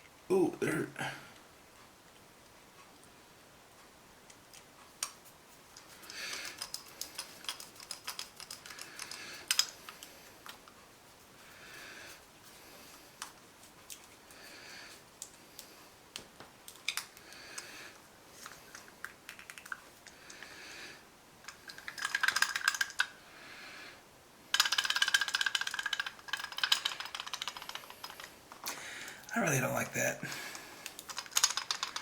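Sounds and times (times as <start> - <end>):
small plastic parts clicking: 5.8 - 10.7, 16.6 - 17.7, 21.4 - 23.1, 24.5 - 29.3, 30.8 - 32.0
rapid rattling clicks: 6.0 - 10.6, 21.4 - 23.1, 24.5 - 28.6, 30.9 - 32.0.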